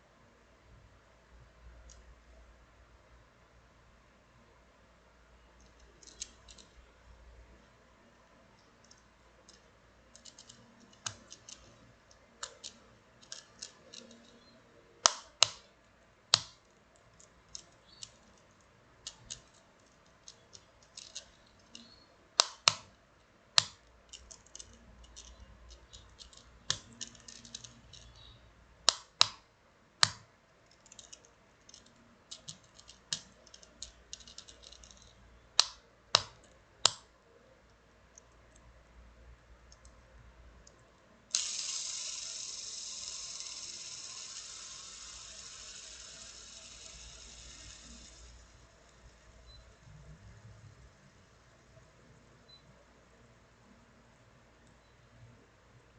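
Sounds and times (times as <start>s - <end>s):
plastic fidget toy clicks: 12.4s - 15.7s, 20.2s - 22.9s, 23.6s - 28.2s, 41.3s - 49.1s.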